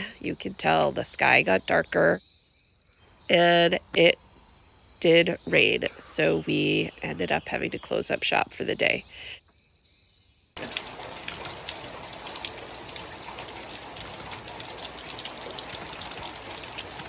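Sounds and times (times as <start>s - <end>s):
steady rain with dripping: 10.6s - 17.0s.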